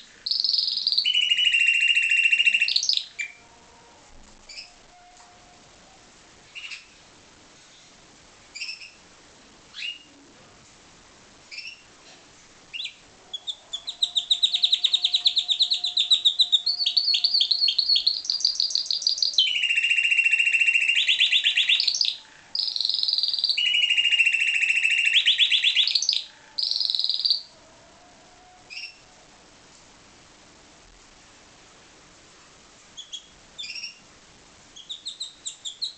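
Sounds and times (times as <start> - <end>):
canary trilling song: 0.0 - 3.6, 4.5 - 5.6, 6.5 - 7.0, 8.5 - 9.0, 9.7 - 10.1, 11.5 - 11.9, 12.7 - 27.6, 28.4 - 29.1, 32.9 - 34.1, 34.7 - 35.9.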